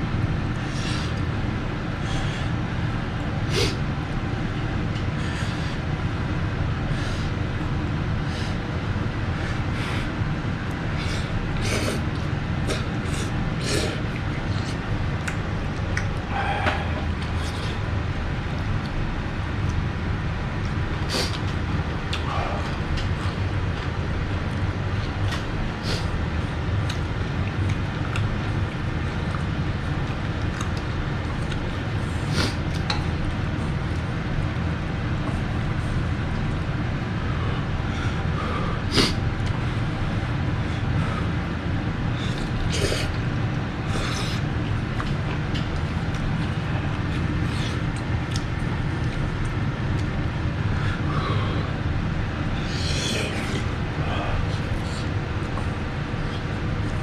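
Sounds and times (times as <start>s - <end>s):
steady low hum: 0.0s - 57.0s
eating noises: 0.4s - 57.0s
mouth clicks and smacks: 11.6s - 17.8s, 43.9s - 50.2s.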